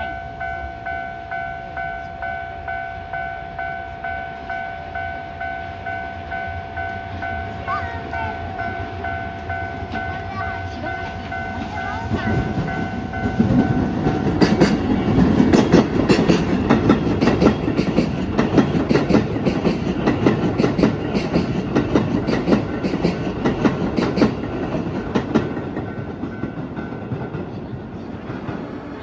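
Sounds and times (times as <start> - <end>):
electric train passing: 0.0 - 29.0
wheels clattering over rail joints: 7.1 - 29.0.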